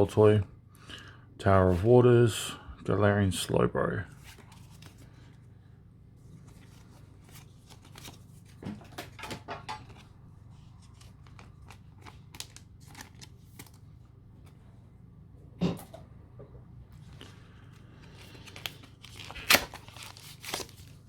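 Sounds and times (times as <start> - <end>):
steady low hum: 0.0 - 21.0
rustling of cards and foil wrappers: 6.4 - 9.2, 9.8 - 14.0, 17.2 - 21.0.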